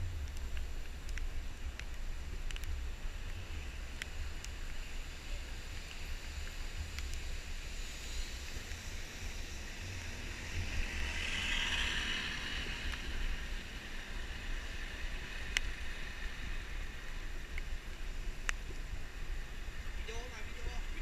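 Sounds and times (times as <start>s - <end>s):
vehicle low rumble: 0.0s - 21.0s
hiss: 3.4s - 13.4s.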